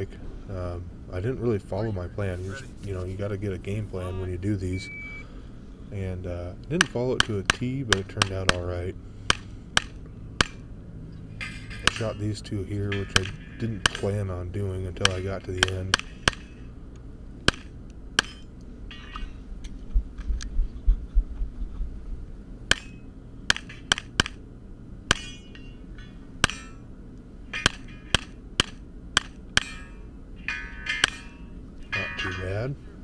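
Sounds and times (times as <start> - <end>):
short metallic ring: 11.4 - 14.4, 18.2 - 19.4, 25.1 - 28.4, 29.6 - 32.8.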